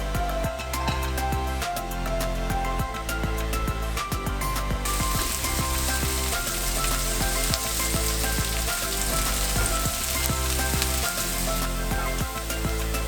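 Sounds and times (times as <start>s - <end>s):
quiet background music: 0.0s - 13.0s
food sizzling in a frying pan: 4.8s - 13.0s.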